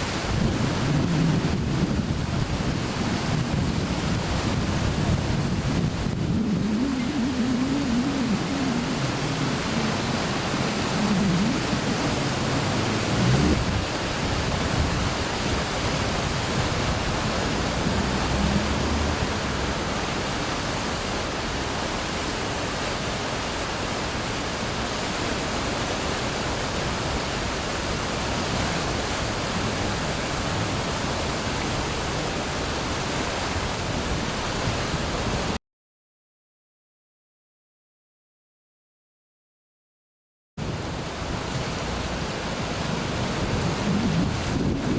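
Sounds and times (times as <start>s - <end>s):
river rushing in flood: 0.0s - 35.6s, 40.6s - 44.9s
low rumbling: 0.1s - 20.8s, 28.8s - 32.1s.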